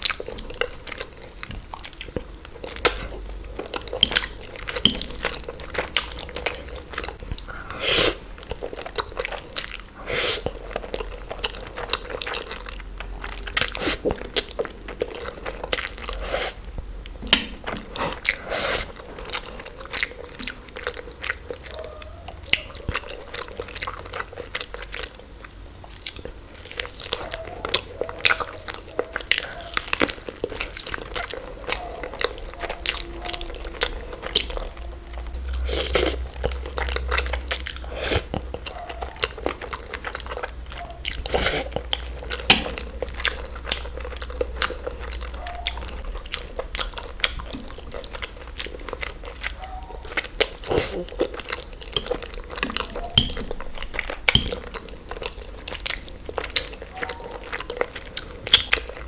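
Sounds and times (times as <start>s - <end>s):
chewing and crunching food: 0.0s - 59.0s.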